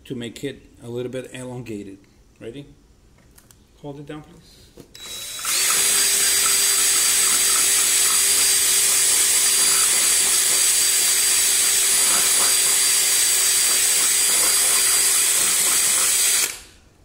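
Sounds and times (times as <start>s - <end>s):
electric drill running: 5.0s - 16.8s.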